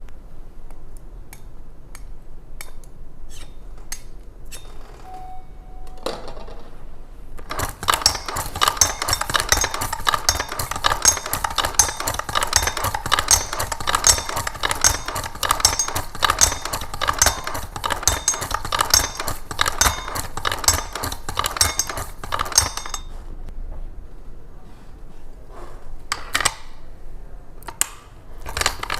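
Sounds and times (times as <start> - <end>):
metal parts clicking and clinking: 7.4 - 23.2, 27.7 - 28.9.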